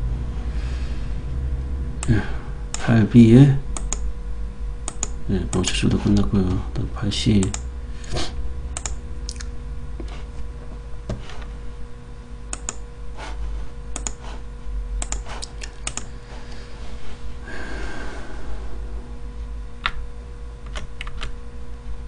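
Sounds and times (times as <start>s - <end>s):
low electrical hum: 0.0s - 22.0s
keyboard and mouse clicks: 3.8s - 4.0s, 4.8s - 6.3s, 7.4s - 7.7s, 8.8s - 9.5s, 12.5s - 12.8s, 13.9s - 14.2s, 15.0s - 16.1s, 20.6s - 21.3s.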